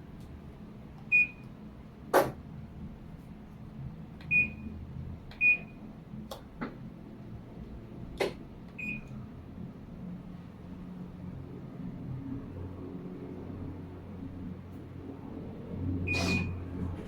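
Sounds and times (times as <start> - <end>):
washing machine beeps: 1.1 - 1.5, 4.2 - 5.8, 8.8 - 9.2, 16.1 - 16.6.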